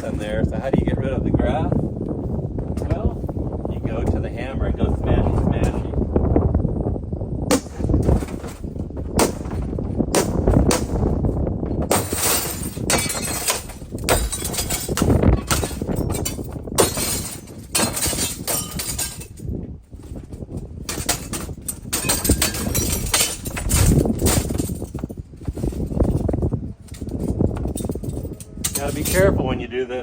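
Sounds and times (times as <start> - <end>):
broken glass clinking: 11.9 - 19.4, 20.9 - 24.9.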